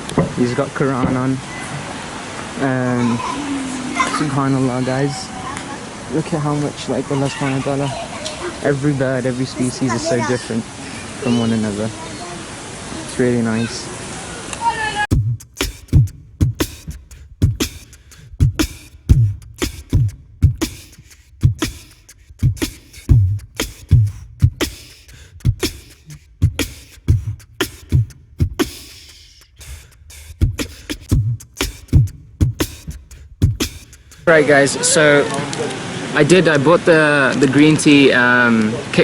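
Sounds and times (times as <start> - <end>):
beatbox percussion beat: 15.1 - 34.3.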